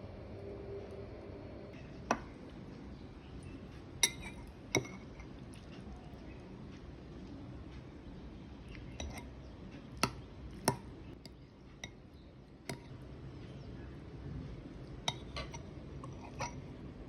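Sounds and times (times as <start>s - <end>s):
utensil clinking on dishware: 4.0s - 5.3s.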